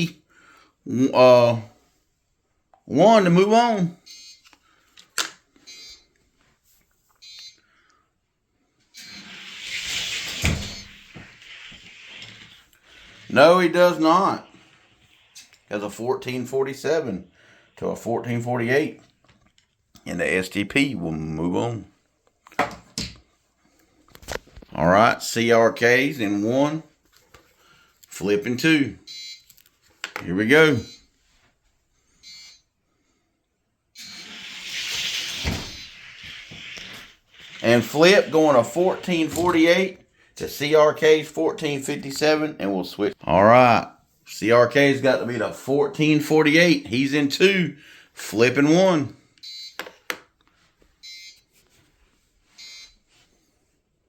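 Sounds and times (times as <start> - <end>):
toy cars wheel noise rushing: 9.0 - 13.4, 34.1 - 39.3.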